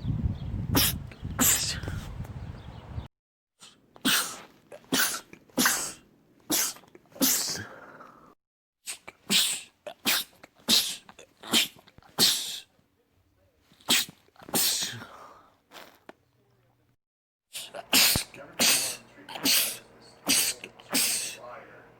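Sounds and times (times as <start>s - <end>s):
man sneezing: 0.8s - 2.1s, 3.6s - 7.9s, 8.8s - 12.7s, 13.8s - 16.0s, 17.5s - 21.4s.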